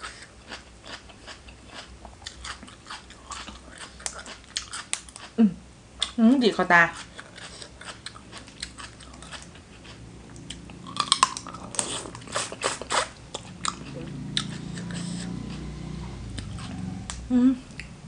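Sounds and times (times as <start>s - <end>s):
person chewing and smacking: 0.0s - 5.4s, 6.9s - 15.7s
crunchy bites: 10.9s - 13.8s.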